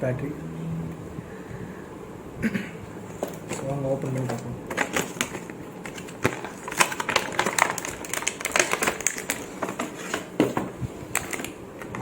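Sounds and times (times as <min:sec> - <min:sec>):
cardboard and plastic crinkling: 0:03.0 - 0:12.0.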